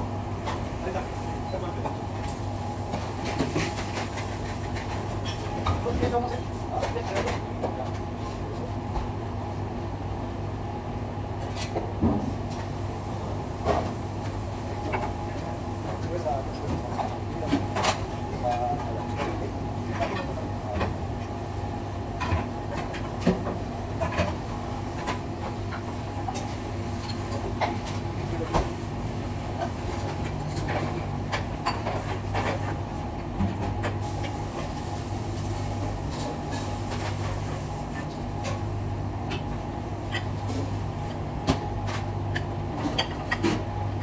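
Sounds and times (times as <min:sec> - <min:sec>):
low machine hum: 0:00.0 - 0:44.0
clatter of dishes and pans: 0:29.6 - 0:32.8, 0:41.5 - 0:43.6.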